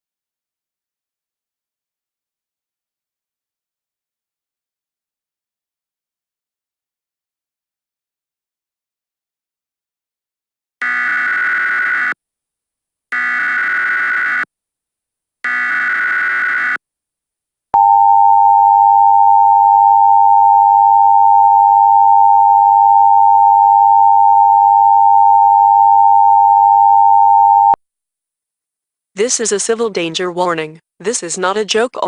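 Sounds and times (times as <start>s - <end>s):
two-tone alert signal: 17.8s - 27.8s.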